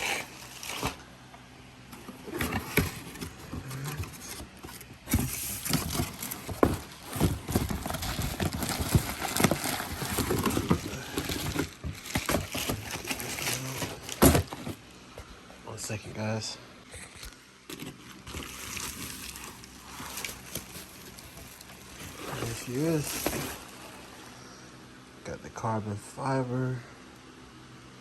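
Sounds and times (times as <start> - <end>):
packaging rustling: 0.0 - 1.0, 1.9 - 14.9, 17.7 - 24.0.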